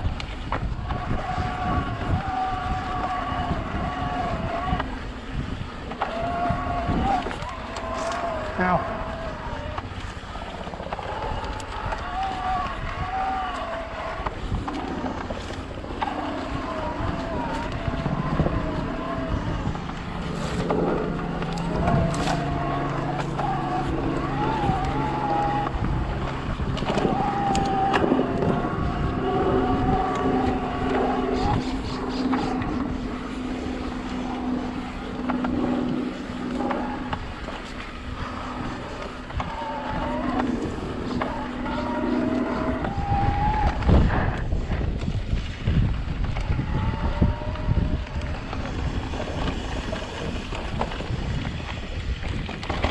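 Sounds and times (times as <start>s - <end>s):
bike rumbling over rough trail: 0.0s - 52.9s
electric bike motor whine: 0.0s - 52.9s
wind on microphone: 0.0s - 52.9s.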